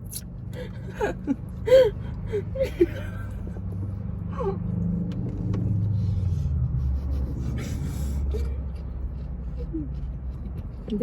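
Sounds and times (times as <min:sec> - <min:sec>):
car engine rumble: 0:00.0 - 0:11.0.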